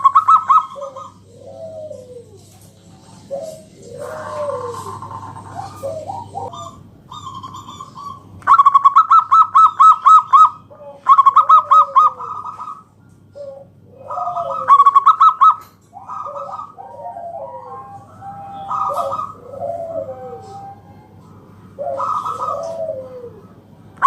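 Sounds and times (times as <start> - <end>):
dove staccato cooing: 0.0 - 24.0
soft sliding dove coos: 0.8 - 6.5, 16.1 - 23.6.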